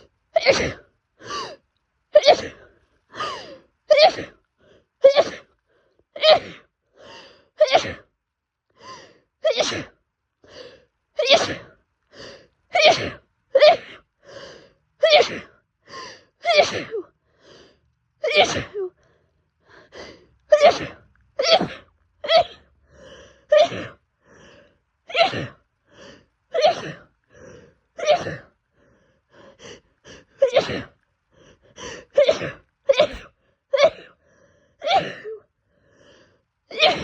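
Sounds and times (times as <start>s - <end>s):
quick breaths: 0.6s - 1.7s, 2.5s - 3.8s, 6.9s - 7.6s, 8.8s - 9.3s, 10.4s - 11.0s, 12.0s - 12.7s, 13.8s - 16.4s, 17.2s - 37.0s
woman sneezing: 18.2s - 18.8s, 32.2s - 34.0s.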